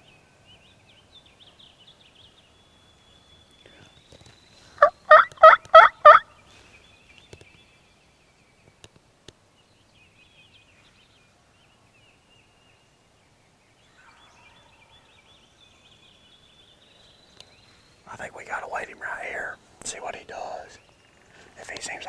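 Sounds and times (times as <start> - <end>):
faint high bird chatter: 0.5 - 8.9, 13.8 - 22.0
turkey yelps: 4.8 - 6.3.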